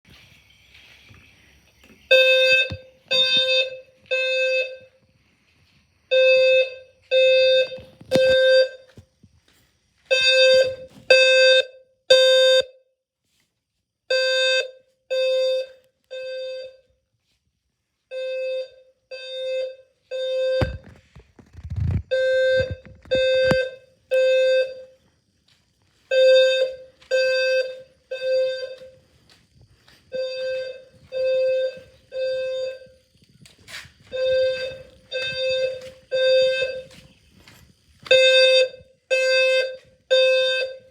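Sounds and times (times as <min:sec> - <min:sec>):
fire alarm horn beeping: 0:02.1 - 0:05.0, 0:06.1 - 0:09.0, 0:10.0 - 0:12.9, 0:14.1 - 0:17.0, 0:18.1 - 0:20.9, 0:22.1 - 0:25.1, 0:26.0 - 0:40.9.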